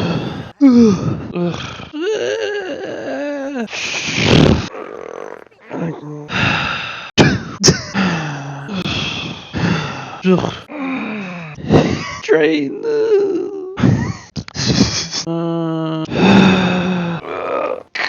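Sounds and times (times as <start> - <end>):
person warbling and groaning: 0.0 - 7.0, 7.6 - 11.5, 16.0 - 18.0
breathy burst: 0.0 - 12.0.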